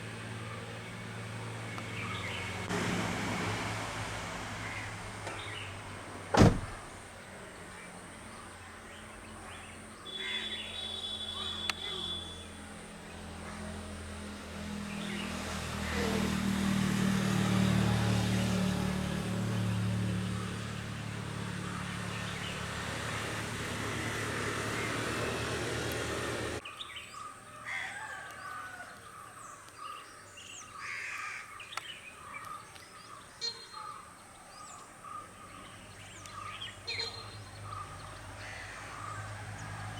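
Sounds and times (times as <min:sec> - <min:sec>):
engine humming: 0:00.0 - 0:09.4, 0:11.0 - 0:26.6
small birds chirping: 0:04.6 - 0:06.0, 0:28.9 - 0:39.3.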